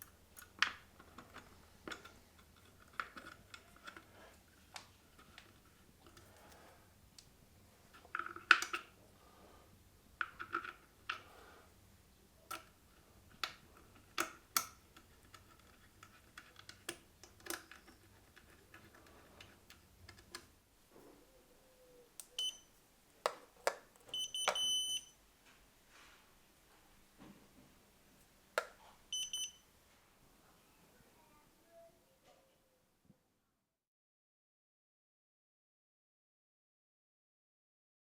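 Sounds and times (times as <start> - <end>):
scooter parts clicking and knocking: 0.0 - 4.1, 8.0 - 9.0, 10.2 - 11.2, 12.5 - 20.5
high electronic beep: 24.2 - 25.1.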